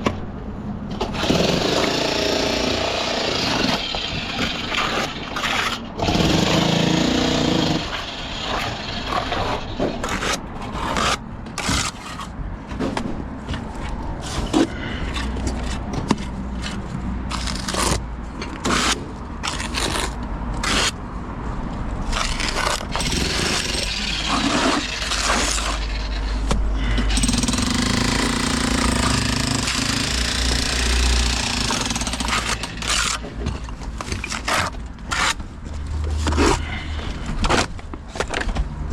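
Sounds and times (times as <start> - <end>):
power tools and machinery: 0.9 - 10.4, 22.2 - 33.3.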